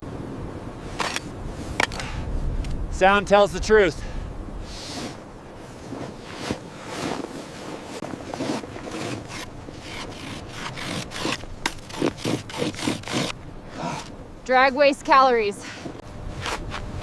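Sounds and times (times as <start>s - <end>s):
scraping and crunching on snow: 4.6s - 14.0s, 15.7s - 17.0s.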